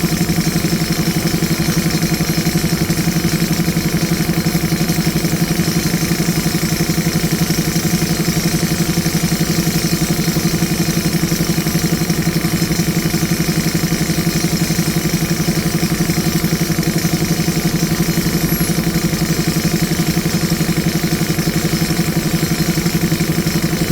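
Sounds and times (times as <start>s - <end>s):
diesel engine idling: 17.7s - 21.3s.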